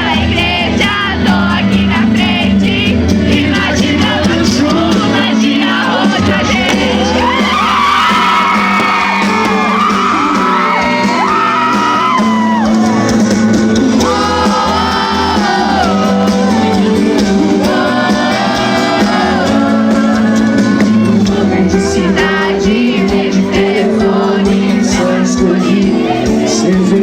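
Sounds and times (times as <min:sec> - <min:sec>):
crowd singing along: 0:00.0 - 0:27.0
live band music: 0:00.0 - 0:27.0
crowd shouting and whooping: 0:05.8 - 0:27.0.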